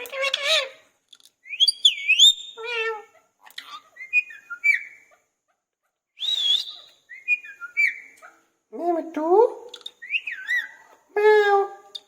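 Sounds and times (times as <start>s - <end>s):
parrot whistling: 6.2s - 8.1s.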